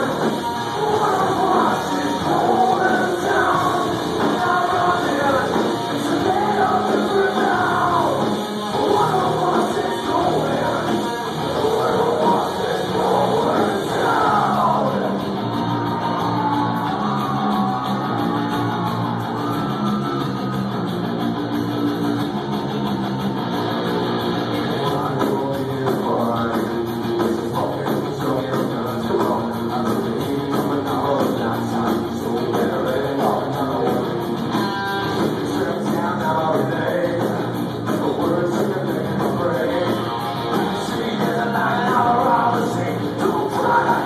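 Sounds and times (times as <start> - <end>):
person singing: 0.0 - 15.2, 35.2 - 44.0
distorted guitars: 0.0 - 44.0
drums: 0.0 - 44.0.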